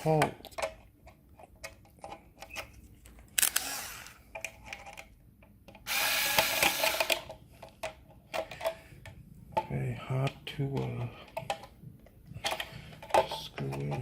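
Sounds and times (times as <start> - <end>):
electric screwdriver running: 3.4 - 4.2, 5.9 - 7.2.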